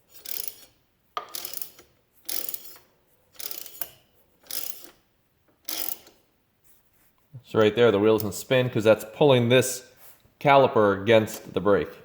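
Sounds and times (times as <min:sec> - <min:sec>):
mechanical ratcheting strokes: 0:00.0 - 0:05.0, 0:05.6 - 0:06.2.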